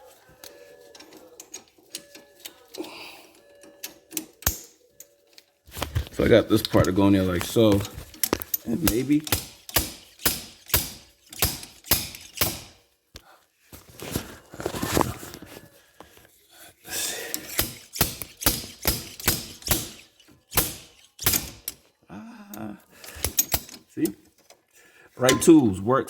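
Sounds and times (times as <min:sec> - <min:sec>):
slide hammer knocking on metal: 0:08.8 - 0:12.7, 0:25.3 - 0:25.8.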